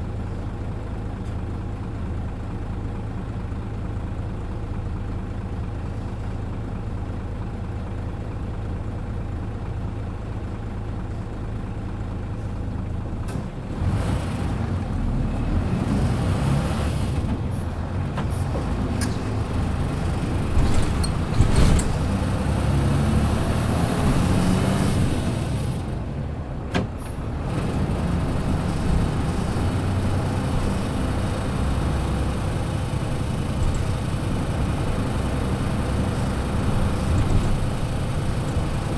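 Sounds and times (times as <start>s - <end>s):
bus engine running: 0.0s - 38.9s
rattles and knocks: 17.2s - 22.2s.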